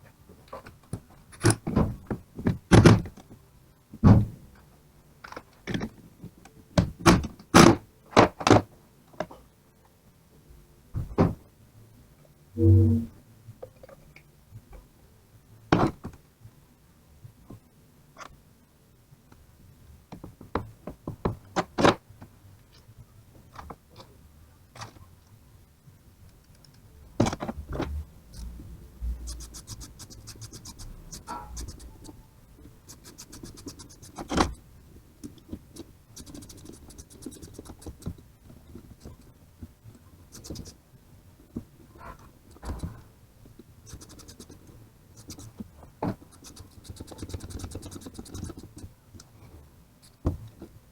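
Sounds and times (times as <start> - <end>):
fine rapid scratching: 29.3 - 32.2, 32.8 - 34.6, 35.3 - 38.2, 40.3 - 40.8, 43.8 - 45.6, 46.2 - 48.9.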